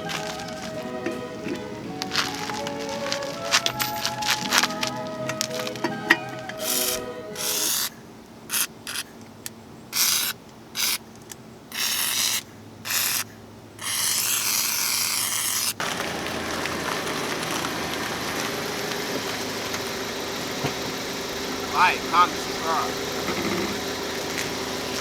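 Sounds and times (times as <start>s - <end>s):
car engine idling: 0.0s - 8.5s, 15.8s - 25.0s
rasping scraping bursts: 0.0s - 9.1s, 10.0s - 11.0s, 11.7s - 25.0s.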